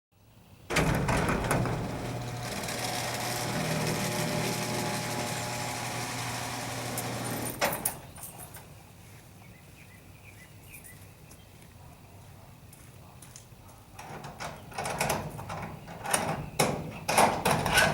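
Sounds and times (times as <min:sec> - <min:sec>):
machine hum: 0:00.7 - 0:07.8.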